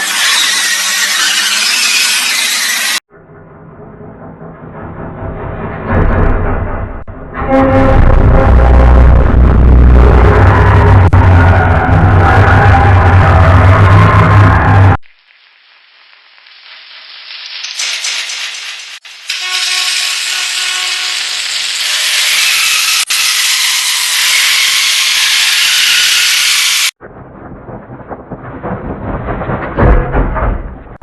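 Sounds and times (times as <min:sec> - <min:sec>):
rough low pitched sound: 0:03.1 - 0:15.0
processed horn with steam-like hiss: 0:19.1 - 0:26.9.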